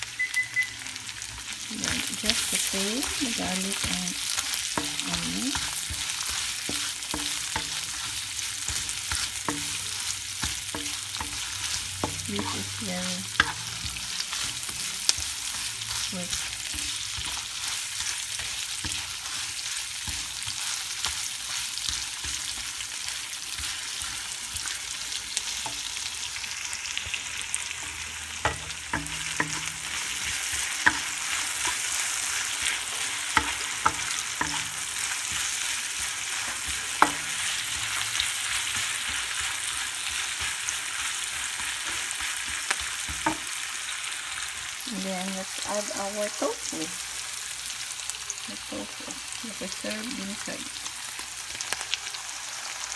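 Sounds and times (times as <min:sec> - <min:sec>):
food sizzling in oil: 0:00.0 - 0:52.9
utensil knocking against pan: 0:28.5 - 0:29.8.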